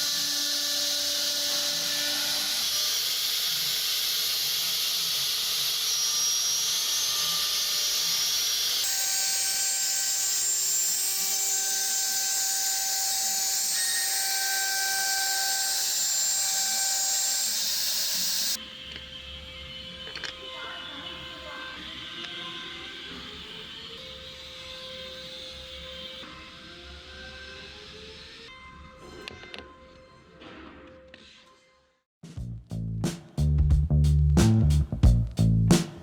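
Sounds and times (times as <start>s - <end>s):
woodworking machines cutting wood: 0.0s - 28.4s.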